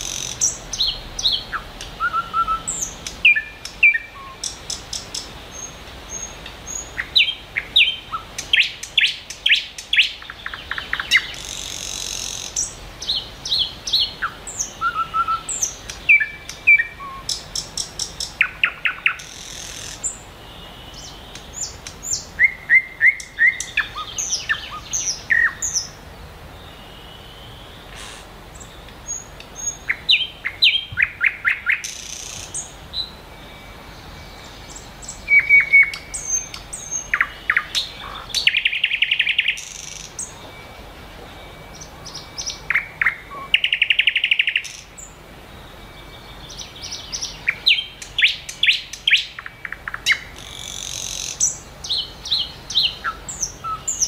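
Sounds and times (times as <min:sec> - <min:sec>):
buzzy bird trill: 0:00.0 - 0:26.0
songbirds chirping: 0:00.0 - 0:54.0.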